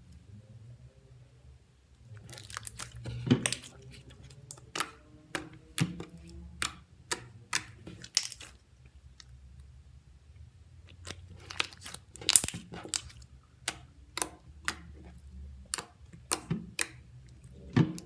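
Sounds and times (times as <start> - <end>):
slime crackling: 2.1 - 9.4, 10.8 - 18.0
slime popping and clicking: 2.2 - 3.7, 4.5 - 8.6, 10.9 - 17.0
slime being stretched and pressed: 2.2 - 8.6, 10.9 - 18.0.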